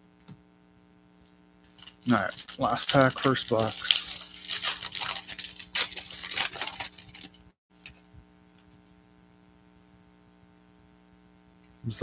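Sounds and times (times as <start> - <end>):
faint electrical hum: 0.0 - 12.0
foil wrapper crinkling and tearing: 1.6 - 8.1.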